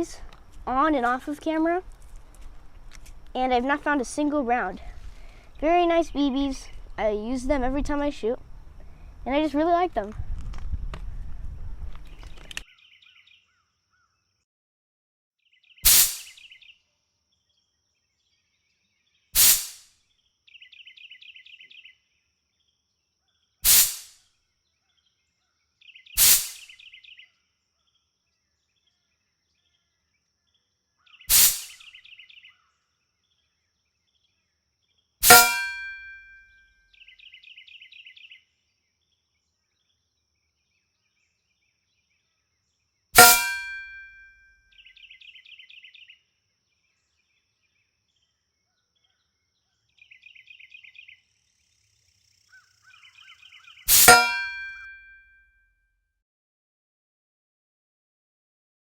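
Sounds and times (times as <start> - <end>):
air pistol shots: 15.8 - 16.4, 19.4 - 19.9, 23.6 - 24.2, 26.2 - 26.7, 31.3 - 31.8, 35.2 - 36.1, 53.9 - 54.7
metallic clang of target: 15.9 - 16.4, 19.4 - 19.8, 23.7 - 24.2, 26.2 - 26.7, 31.3 - 31.8, 35.2 - 36.4, 43.2 - 44.3, 53.9 - 55.2.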